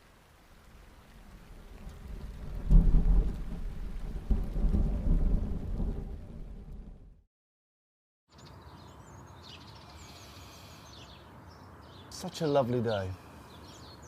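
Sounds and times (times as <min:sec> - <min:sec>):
thunder rumbling: 0:00.7 - 0:07.2.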